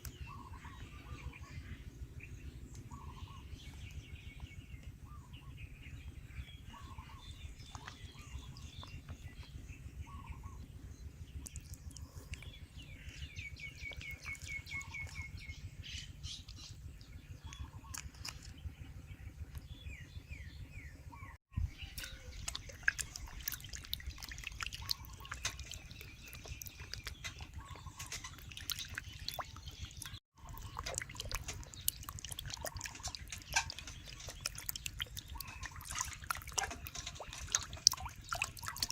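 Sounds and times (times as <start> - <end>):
birds chirping: 0.0 - 38.9
low background hum: 0.0 - 38.9
bird trill: 2.8 - 4.4, 6.6 - 10.6, 11.6 - 19.2, 19.8 - 38.9
dripping and clicking sounds: 7.3 - 9.6, 11.3 - 15.5, 16.3 - 18.6, 21.8 - 38.9.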